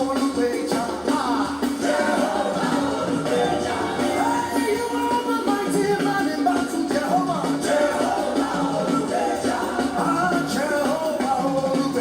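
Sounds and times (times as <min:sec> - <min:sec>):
band playing gospel music: 0:00.0 - 0:12.0.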